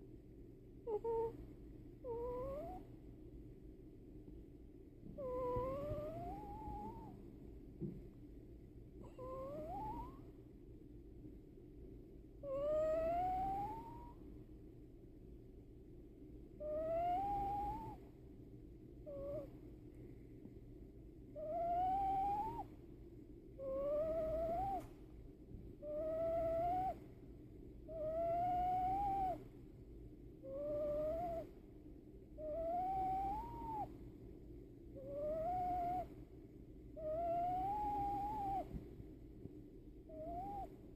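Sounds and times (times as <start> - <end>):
steady low hum: 0.0 - 40.9
baby whistling snore: 5.2 - 7.1, 9.1 - 10.2, 12.5 - 14.2, 16.8 - 18.0, 21.4 - 22.7, 23.7 - 24.8, 25.9 - 27.0, 28.1 - 29.4, 30.5 - 31.5, 32.5 - 33.9, 35.0 - 36.1, 37.1 - 38.7, 40.1 - 40.7.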